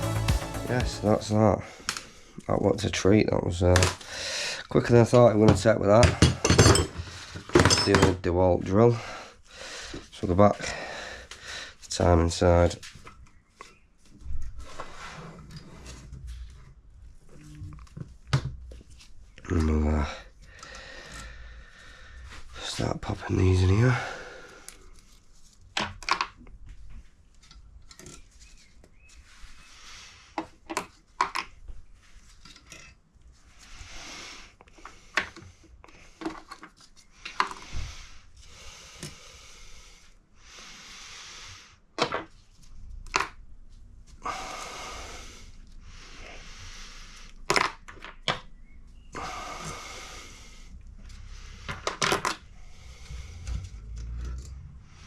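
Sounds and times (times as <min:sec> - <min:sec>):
rustling and scraping: 0:12.6 - 0:19.8, 0:24.6 - 0:38.5, 0:42.2 - 0:44.2, 0:49.6 - 0:55.0.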